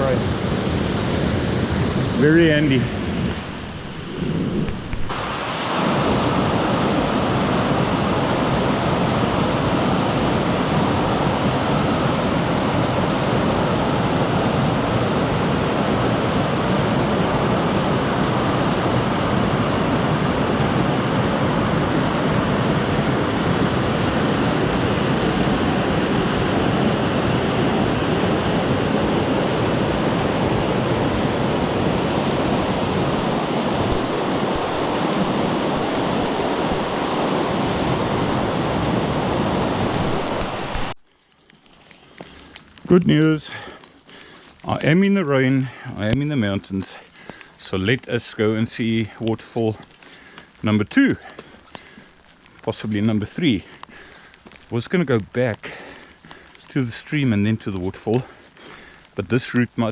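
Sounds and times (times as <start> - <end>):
waterfall rushing: 0.0 - 41.0.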